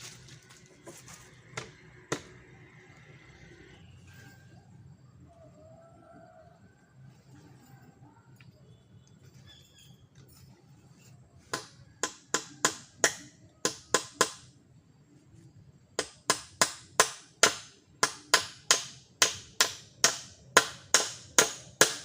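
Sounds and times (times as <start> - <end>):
tool striking wood: 0.9 - 2.5, 11.4 - 14.5, 16.0 - 22.0.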